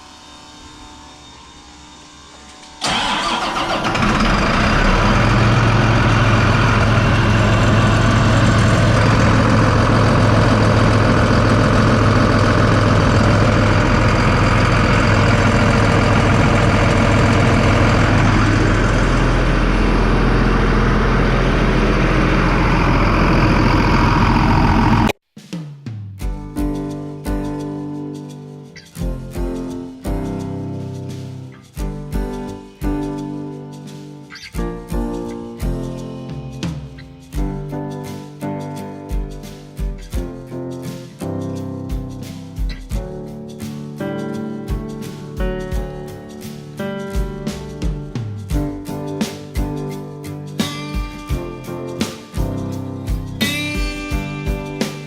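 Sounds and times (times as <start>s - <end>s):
tractor diesel engine starting and idling: 2.8s - 25.2s.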